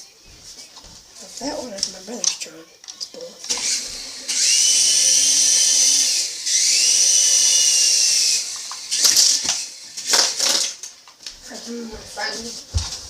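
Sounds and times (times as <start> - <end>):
toy quadcopter propellers whining: 3.4 - 10.8.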